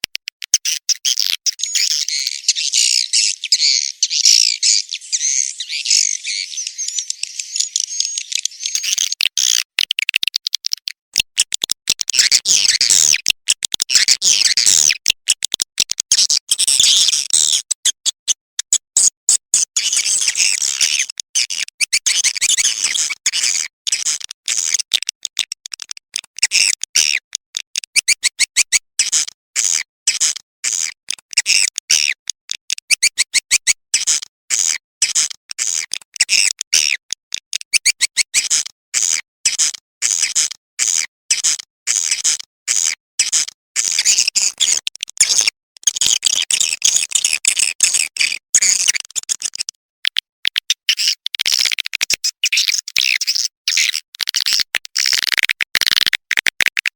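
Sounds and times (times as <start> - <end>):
swiftlet twittering playback: 0.6 - 9.2.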